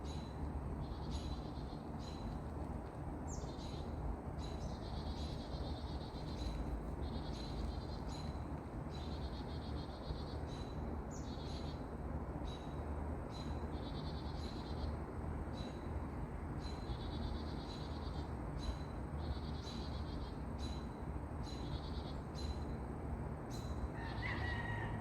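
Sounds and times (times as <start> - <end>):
steady low rumble: 0.0 - 20.3.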